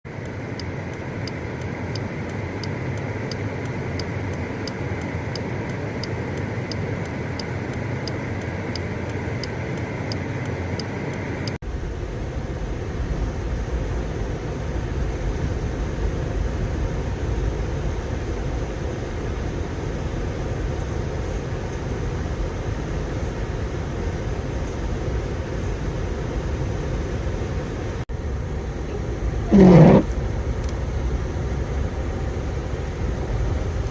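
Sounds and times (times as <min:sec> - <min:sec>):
car road and engine noise: 0:00.0 - 0:33.9
light regular ticking: 0:00.2 - 0:11.6.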